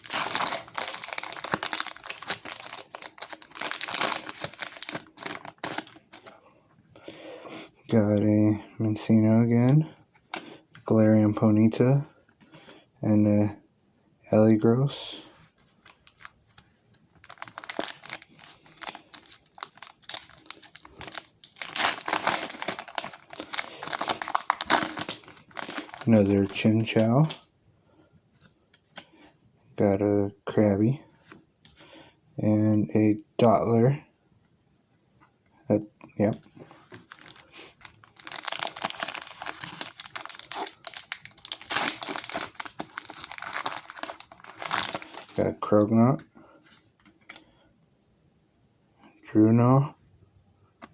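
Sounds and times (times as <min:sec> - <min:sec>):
foil wrapper crinkling and tearing: 0:00.0 - 0:06.3, 0:17.2 - 0:27.0, 0:36.9 - 0:45.4.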